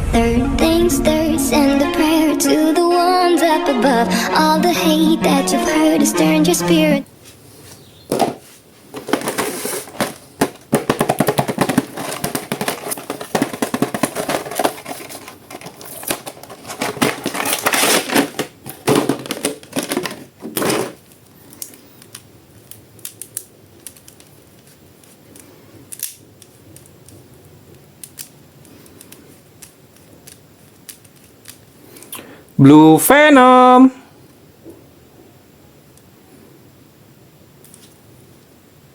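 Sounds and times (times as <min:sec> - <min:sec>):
plastic packaging crackling: 0:08.8 - 0:31.8.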